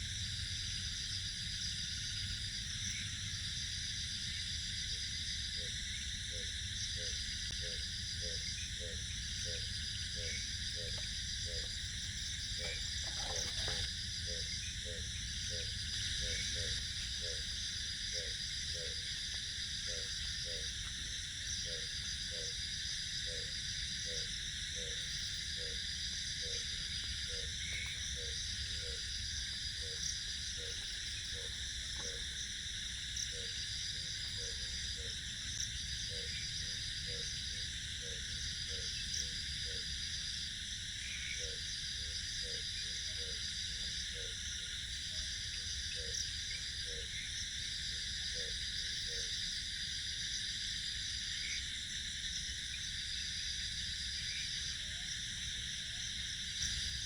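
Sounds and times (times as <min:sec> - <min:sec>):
insects chirring: 0:00.0 - 0:57.0
insect high trill: 0:05.6 - 0:39.9.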